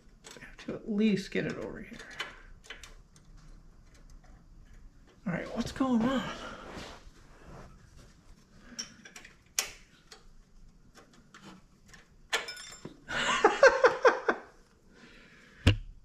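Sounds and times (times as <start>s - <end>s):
metal parts clicking and tapping: 0.0s - 0.7s, 1.4s - 5.2s, 8.7s - 13.0s.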